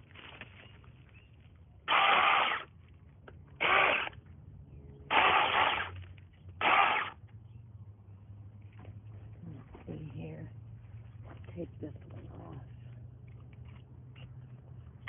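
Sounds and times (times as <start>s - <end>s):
electric mini chainsaw running: 1.9s - 2.7s, 3.6s - 4.2s, 5.1s - 6.0s, 6.6s - 7.2s.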